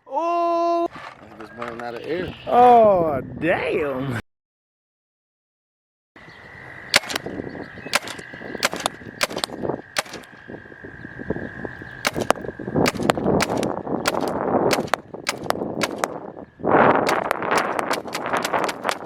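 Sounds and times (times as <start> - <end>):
paintball gun shots: 7.0 - 7.3, 8.0 - 10.4, 12.0 - 16.2, 17.1 - 19.0.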